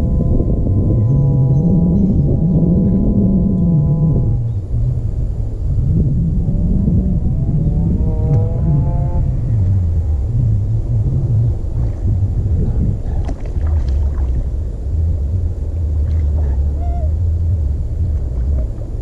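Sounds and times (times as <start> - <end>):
boat motor rumble: 0.0 - 19.0.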